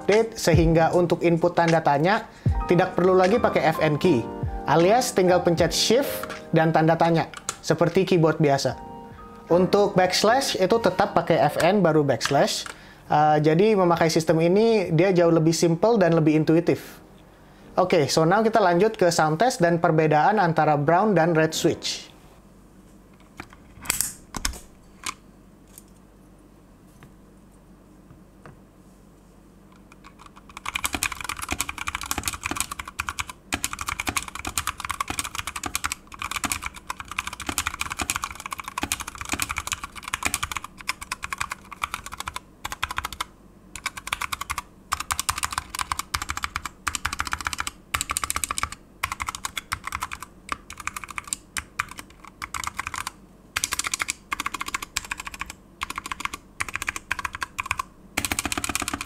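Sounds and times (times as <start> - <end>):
fast typing on mechanical keyboard: 29.9 - 59.0.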